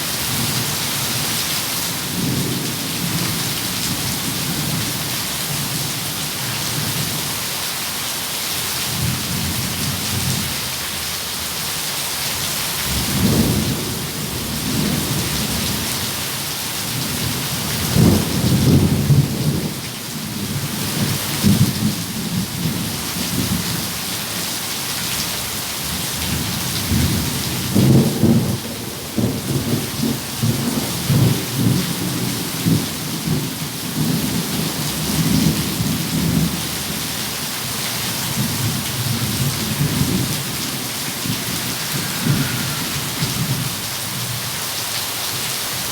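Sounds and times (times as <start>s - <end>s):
heavy rain hissing: 0.0s - 45.9s
thunder rumbling: 38.3s - 44.6s.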